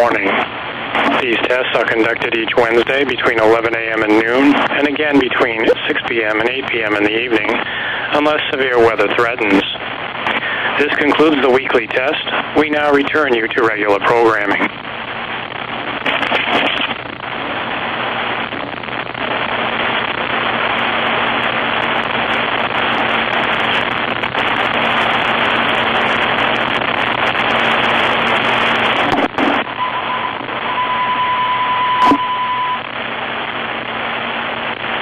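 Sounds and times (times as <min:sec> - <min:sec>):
steady hiss: 0:00.0 - 0:30.7
faint steady tone: 0:29.7 - 0:33.0.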